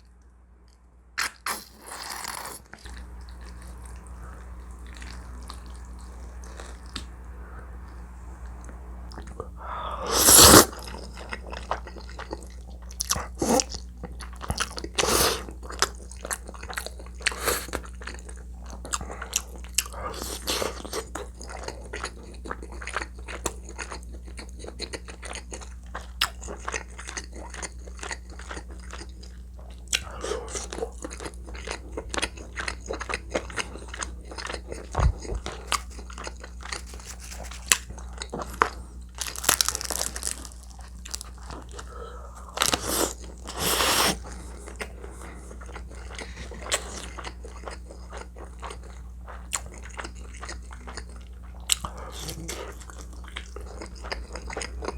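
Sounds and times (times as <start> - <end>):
person chewing food: 0.0 - 7.2, 7.8 - 54.9.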